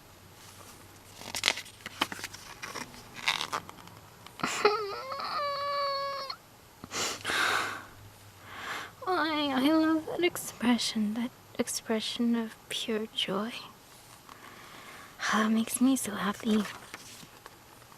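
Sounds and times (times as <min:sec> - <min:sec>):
handling clicks and rustles: 0:00.4 - 0:04.4
woman squealing: 0:04.6 - 0:06.4
breathy exhale: 0:06.9 - 0:09.0, 0:14.4 - 0:15.2.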